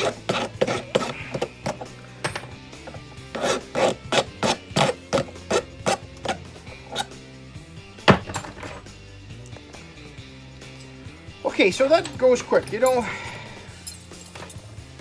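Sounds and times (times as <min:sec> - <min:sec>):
hand file rasping on metal: 0:00.0 - 0:02.1, 0:02.8 - 0:07.2.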